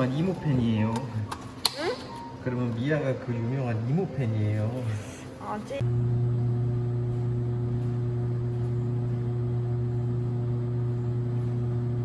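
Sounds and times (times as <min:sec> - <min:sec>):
steady low hum: 0:02.4 - 0:12.0.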